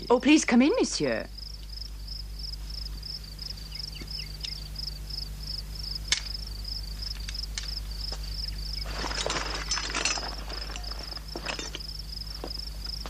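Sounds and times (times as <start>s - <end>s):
cricket chirping: 0.0s - 13.0s
low steady hum: 0.0s - 13.0s
scuffing and clatter: 8.1s - 13.0s.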